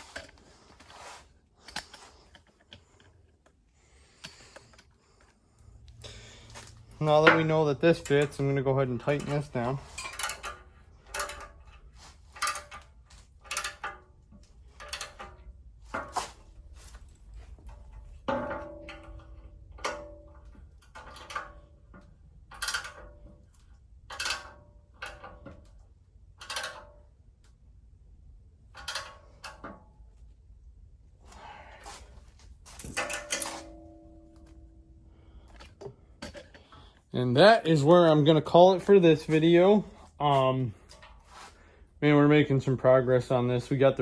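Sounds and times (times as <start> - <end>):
hand tools clicking on metal bolts: 6.5 - 16.4, 17.6 - 21.9, 22.5 - 23.5, 24.1 - 25.7, 26.4 - 27.0, 28.8 - 29.7, 32.7 - 33.8.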